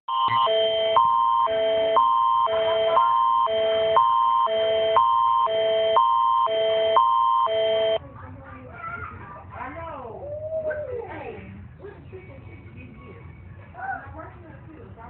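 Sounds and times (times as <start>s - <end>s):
alternating alert tone chords: 0.1s - 8.0s
constant high tone: 0.1s - 8.0s.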